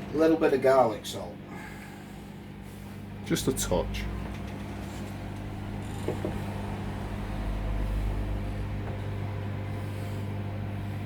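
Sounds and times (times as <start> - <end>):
microwave oven humming: 0.0 - 11.0.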